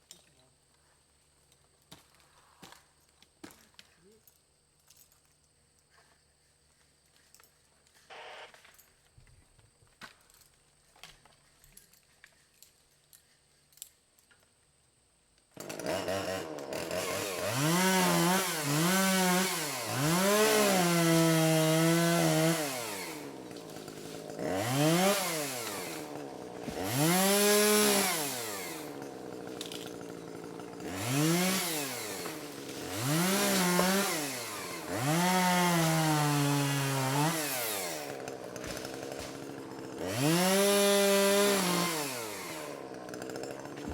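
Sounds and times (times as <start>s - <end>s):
chainsaw revving and cutting: 8.1s - 8.5s, 15.5s - 43.9s.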